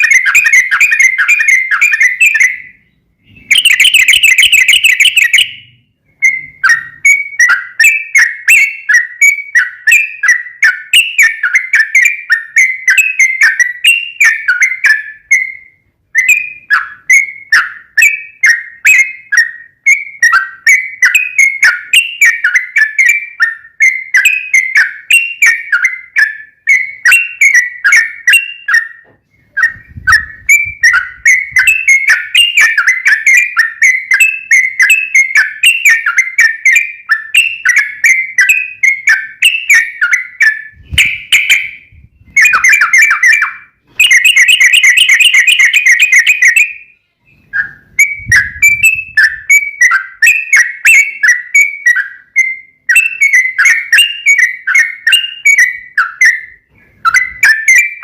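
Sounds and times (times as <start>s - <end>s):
bulbul chirping: 0.0s - 58.0s
bird rattling trill: 3.5s - 5.4s, 29.6s - 46.7s.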